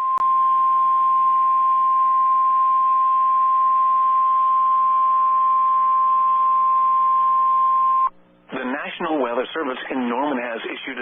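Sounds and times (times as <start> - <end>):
steady warning alarm tone: 0.0 - 8.1.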